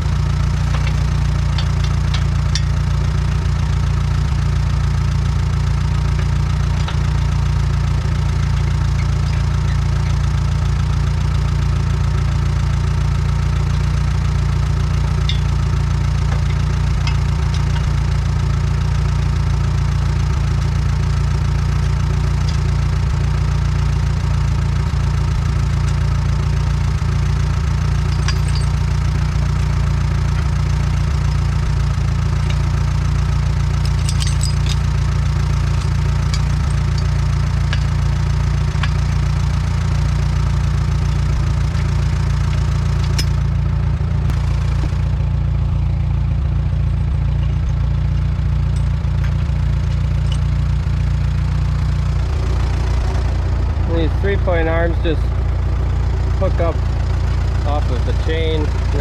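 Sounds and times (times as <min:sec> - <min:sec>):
tractor engine idling: 0:00.0 - 0:59.0.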